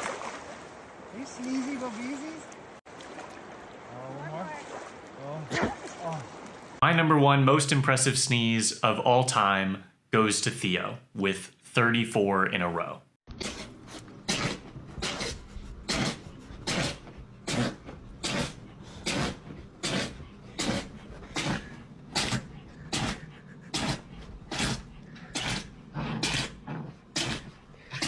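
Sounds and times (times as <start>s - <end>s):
dog sneezing: 13.4s - 24.8s.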